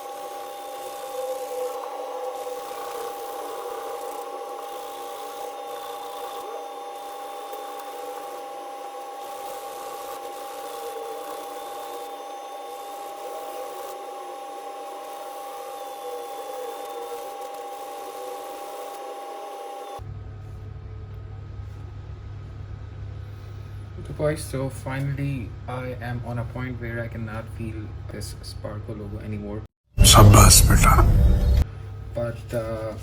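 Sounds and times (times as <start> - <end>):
steady hum: 30.0 - 31.7.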